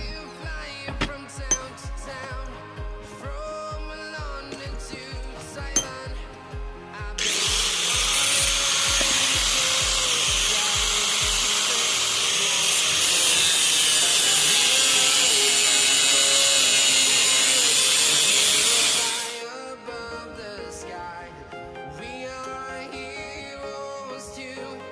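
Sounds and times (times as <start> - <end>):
background music with steady beat: 0.0 - 24.9
power tool running on metal: 4.4 - 6.2, 7.1 - 19.5.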